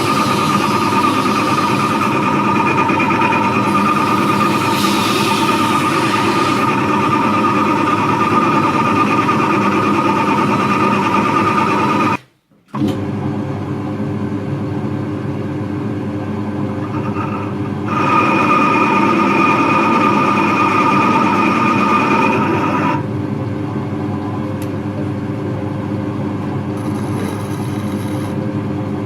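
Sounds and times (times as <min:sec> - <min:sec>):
machine motor whining: 0:00.0 - 0:08.2, 0:26.8 - 0:28.4.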